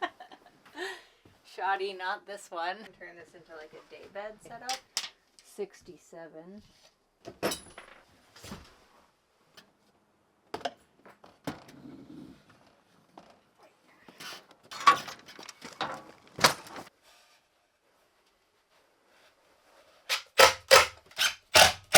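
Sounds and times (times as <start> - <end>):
objects knocking and rattling: 4.6 - 5.2.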